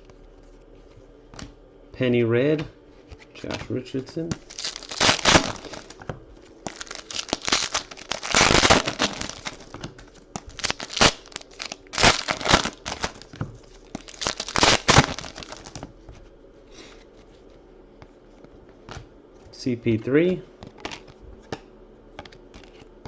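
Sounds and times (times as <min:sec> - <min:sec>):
foil wrappers tearing and crinkling: 0:04.3 - 0:06.0, 0:06.6 - 0:15.8.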